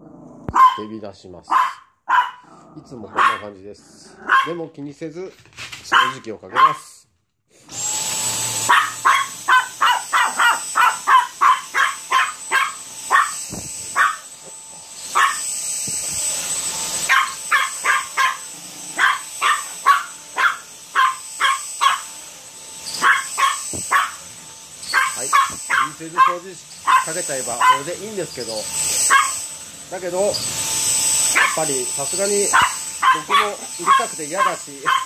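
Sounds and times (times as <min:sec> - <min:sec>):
small dog barking: 0:00.5 - 0:00.9, 0:01.5 - 0:02.5, 0:03.1 - 0:03.5, 0:04.2 - 0:04.6, 0:05.9 - 0:06.9, 0:08.6 - 0:13.4, 0:14.0 - 0:14.3, 0:15.1 - 0:15.4, 0:17.1 - 0:22.1, 0:23.0 - 0:24.2, 0:24.9 - 0:27.9, 0:29.0 - 0:29.4, 0:31.3 - 0:31.6, 0:32.5 - 0:35.0
vacuum cleaner whining: 0:07.5 - 0:35.0.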